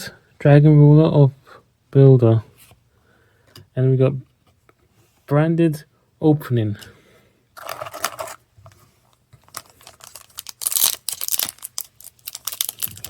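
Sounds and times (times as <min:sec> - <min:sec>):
foil wrapper tearing and crinkling: 0:07.6 - 0:08.4, 0:09.4 - 0:13.0.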